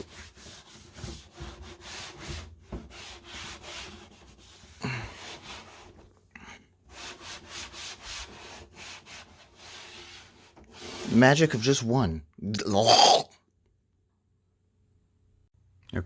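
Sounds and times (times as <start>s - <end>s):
wipe rubbing on screen: 6.9s - 11.8s.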